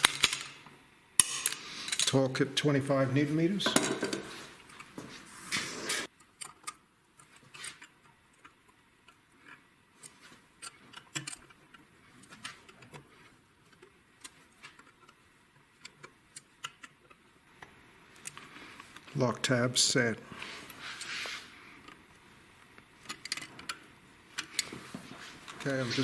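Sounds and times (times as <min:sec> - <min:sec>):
tool handling noise: 0:03.6 - 0:06.1.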